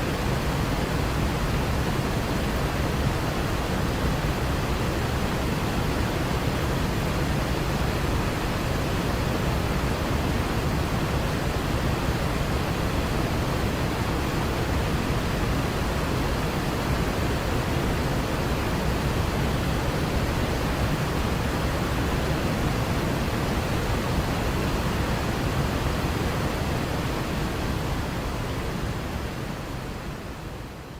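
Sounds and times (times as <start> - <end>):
waterfall roaring: 0.0 - 30.9.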